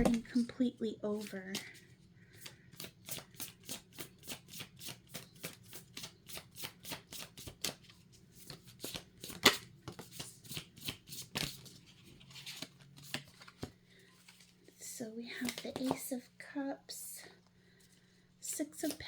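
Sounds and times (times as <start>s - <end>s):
cards being shuffled: 0.0s - 0.4s, 1.1s - 14.6s.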